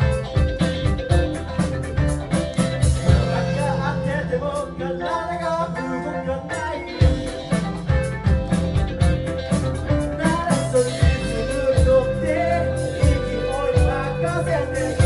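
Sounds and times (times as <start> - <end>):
heavy drum hits: 0.0 - 4.1
live rock band playing: 0.0 - 15.0.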